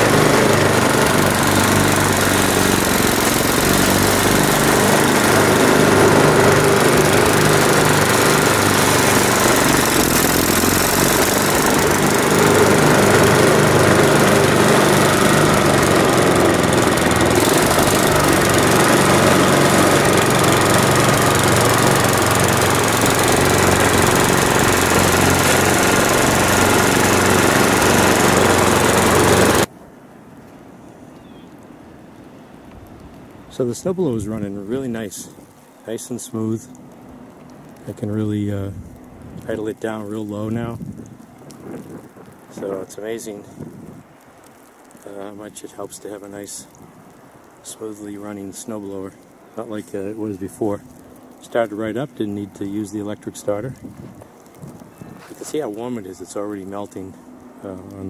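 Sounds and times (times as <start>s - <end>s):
snowblower engine running: 0.0s - 29.7s, 47.4s - 58.0s.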